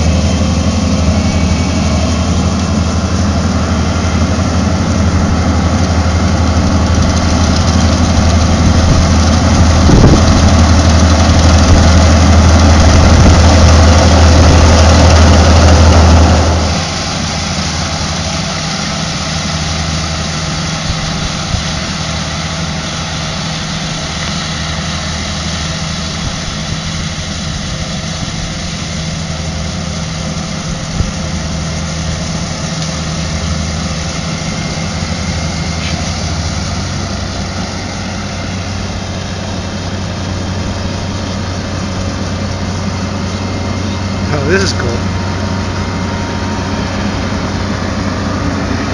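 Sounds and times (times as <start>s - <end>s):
harvester engine hum: 0.0s - 48.9s
machinery clatter: 0.0s - 48.9s.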